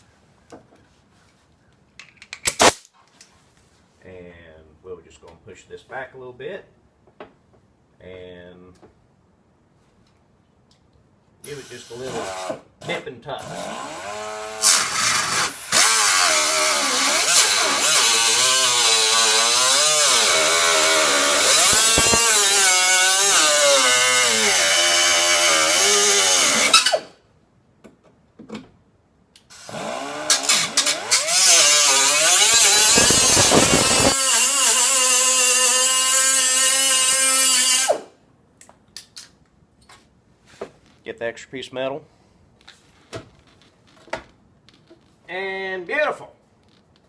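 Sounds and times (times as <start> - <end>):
die grinder cutting metal: 13.5 - 27.0, 29.6 - 38.1.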